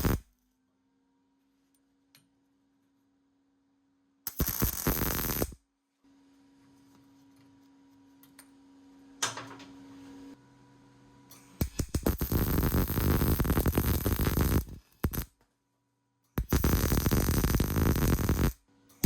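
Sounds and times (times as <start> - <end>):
electric welder crackling: 0.0 - 0.3, 4.3 - 5.6, 11.6 - 15.4, 16.4 - 18.6.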